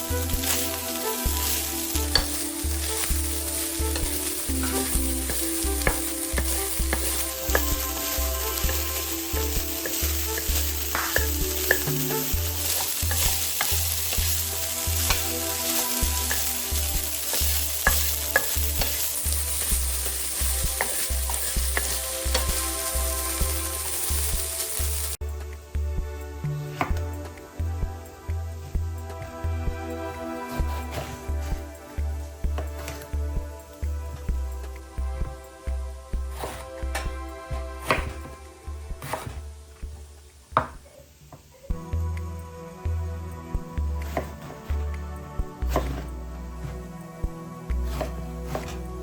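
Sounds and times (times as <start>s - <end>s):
food sizzling in a pan: 0.0s - 25.2s, 37.6s - 41.8s, 47.7s - 48.9s
utensil clicking against pan: 2.0s - 22.6s.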